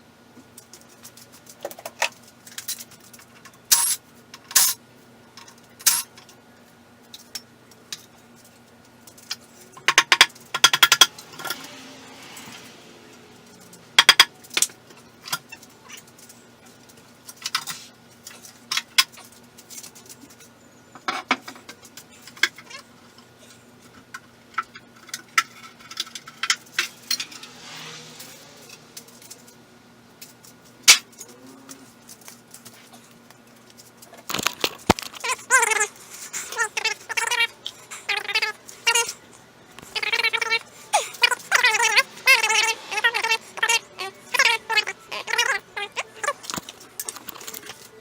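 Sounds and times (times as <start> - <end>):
metal tools clinking: 5.4 - 6.4, 24.6 - 29.6
wavering high-pitched sound: 39.8 - 47.0.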